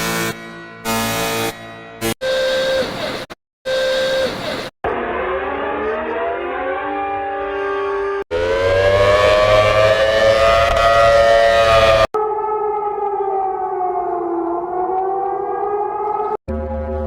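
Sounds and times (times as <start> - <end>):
civil defense siren: 3.7 - 17.0.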